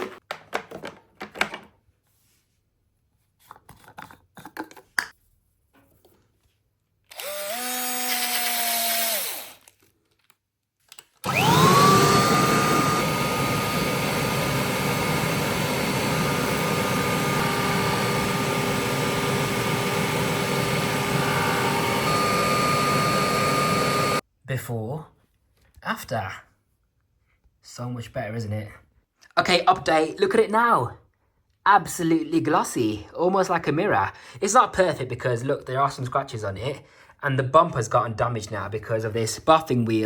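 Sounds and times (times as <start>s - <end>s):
buffing wheel power tool whining: 11.2s - 24.2s.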